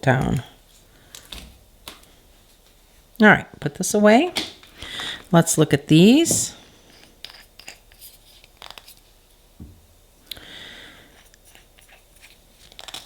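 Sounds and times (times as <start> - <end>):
small objects clicking and tapping: 12.6 - 13.0.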